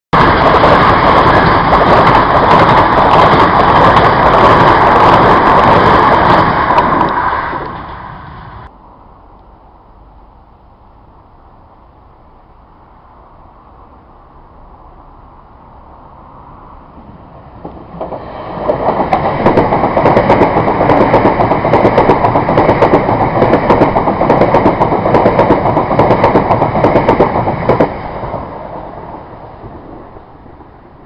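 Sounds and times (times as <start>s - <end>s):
wheels clattering on rails: 0.2s - 8.0s, 17.6s - 28.5s
train passing: 0.2s - 31.0s.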